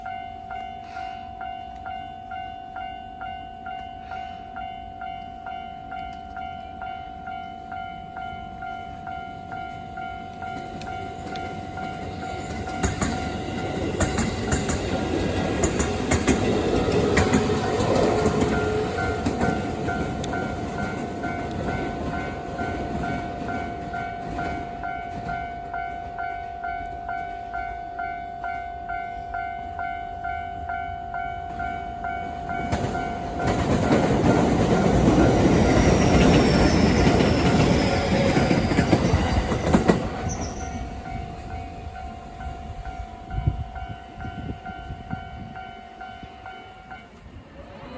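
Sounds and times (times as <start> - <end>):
level-crossing warning bell: 0.0 - 47.9
train passing: 0.0 - 47.9
wheels clacking over rail joints: 10.4 - 26.5, 31.5 - 41.6.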